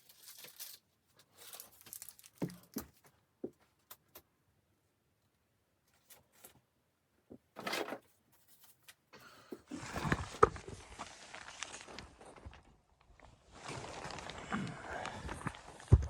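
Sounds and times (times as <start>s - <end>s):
rustling and crunching: 0.0s - 4.1s, 7.5s - 16.0s.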